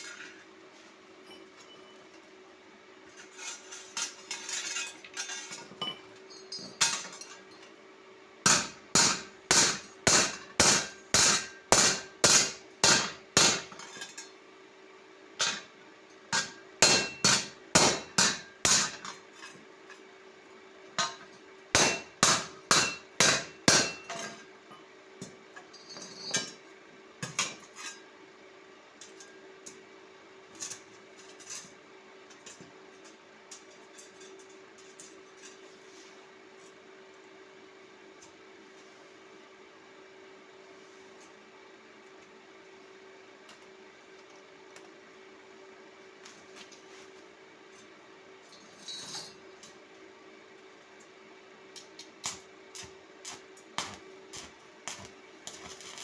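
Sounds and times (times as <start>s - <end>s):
hammer striking metal: 8.5s - 13.7s, 16.4s - 18.9s, 21.8s - 24.2s.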